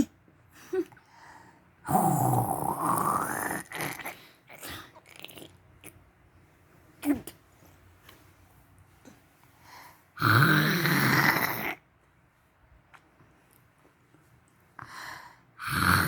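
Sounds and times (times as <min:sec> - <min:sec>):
person snoring: 0:01.8 - 0:04.2, 0:10.2 - 0:11.8, 0:15.6 - 0:16.0.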